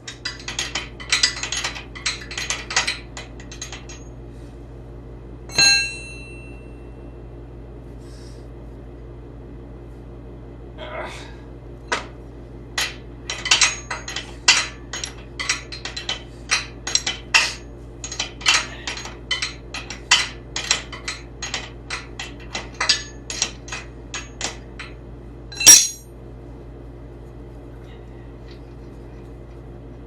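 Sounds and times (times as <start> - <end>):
steady low hum: 0.0 - 30.0
metal-on-metal taps and clinks: 12.8 - 26.0.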